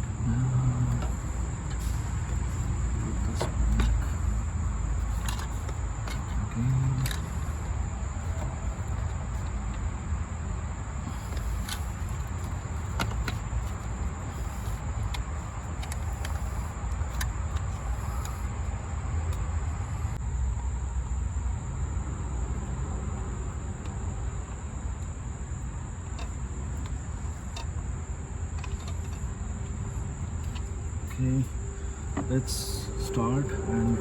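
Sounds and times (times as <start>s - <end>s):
high insect trill: 0.0s - 34.0s
low rumble: 31.4s - 34.0s.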